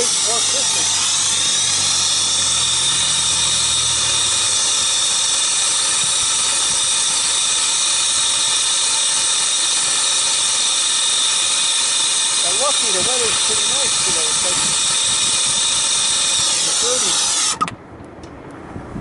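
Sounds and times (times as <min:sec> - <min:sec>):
low hum: 0:00.0 - 0:12.4
torch burning with loud hiss: 0:00.0 - 0:17.6.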